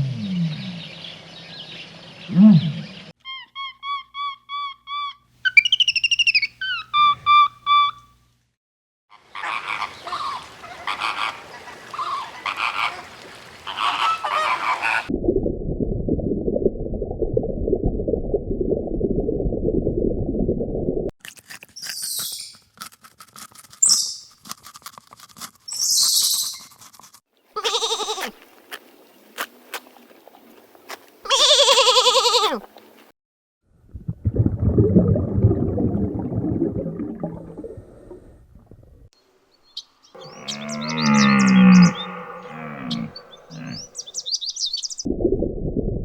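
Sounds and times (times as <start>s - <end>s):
high animal chirps: 3.3s - 8.0s, 23.8s - 24.3s, 25.7s - 26.7s, 39.8s - 45.1s
wavering bleats: 27.6s - 28.3s, 40.2s - 43.9s
low rough animal call: 40.2s - 44.1s.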